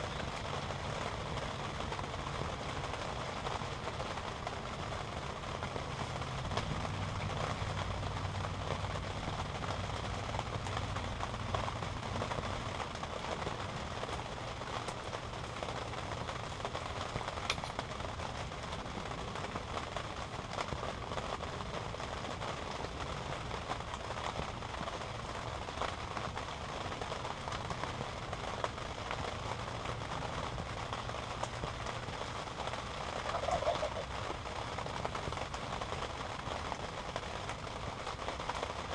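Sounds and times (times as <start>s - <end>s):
steady outdoor hiss: 0.0s - 38.9s
bird call: 33.2s - 34.1s.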